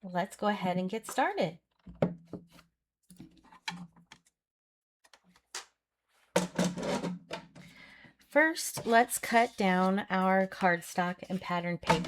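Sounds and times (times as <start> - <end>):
paper rustling scrape: 8.8 - 10.0.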